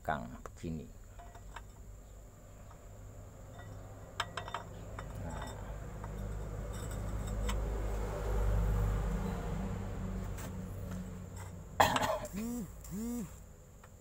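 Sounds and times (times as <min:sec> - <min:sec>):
metal parts clinking: 0:03.5 - 0:07.6.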